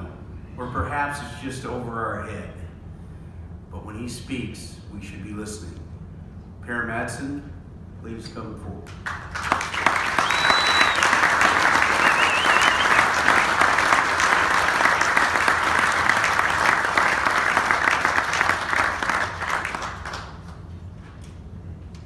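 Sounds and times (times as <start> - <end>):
audience applauding: 9.0 - 20.7
whistles: 9.6 - 13.6.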